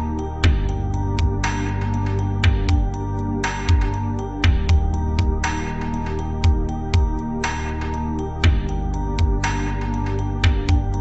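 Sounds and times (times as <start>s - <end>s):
held synth chords: 0.0s - 11.0s
drum beat: 0.4s - 1.4s, 2.4s - 2.9s, 3.7s - 5.4s, 6.4s - 7.2s, 8.4s - 9.4s, 10.4s - 11.0s.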